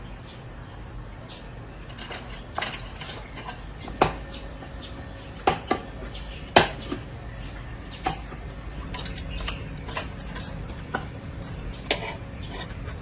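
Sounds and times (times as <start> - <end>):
metal clanks and knocks: 1.9 - 4.2.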